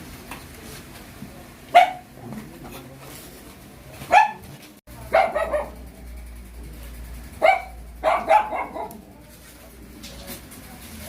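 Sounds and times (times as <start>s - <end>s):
dog barking: 1.7s - 2.1s, 4.1s - 4.5s, 5.1s - 5.8s, 7.4s - 9.0s.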